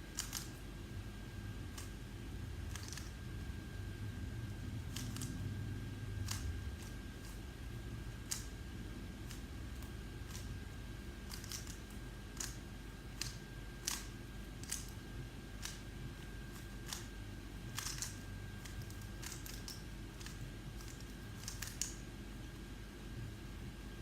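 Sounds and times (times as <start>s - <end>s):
low hum: 0.0s - 24.0s
puzzle cube clicking: 0.1s - 0.5s, 17.7s - 22.0s.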